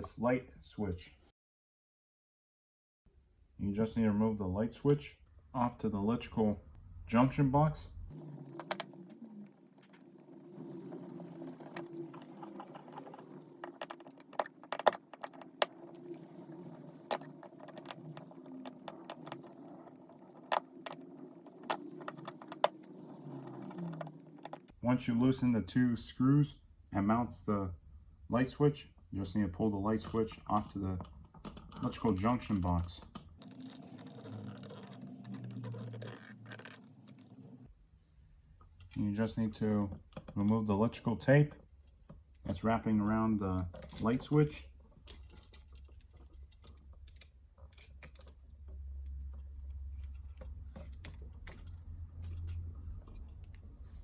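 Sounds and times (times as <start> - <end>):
scratching and handling noise: 7.1 - 24.8, 29.4 - 54.0.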